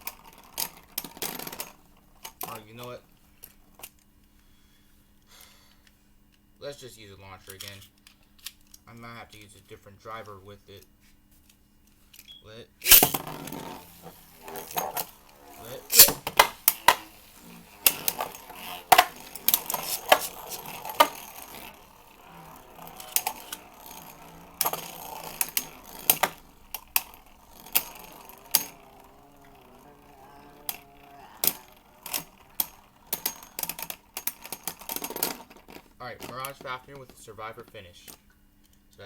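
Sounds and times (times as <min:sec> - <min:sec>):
spinning tops colliding: 0:12.8 - 0:37.2.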